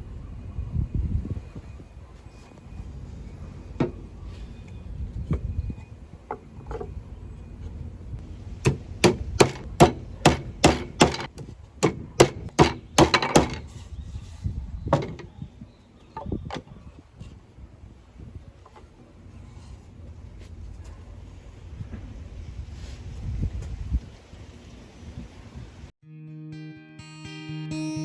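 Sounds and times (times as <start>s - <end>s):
hammer striking wood: 8.6s - 13.7s, 14.9s - 15.3s.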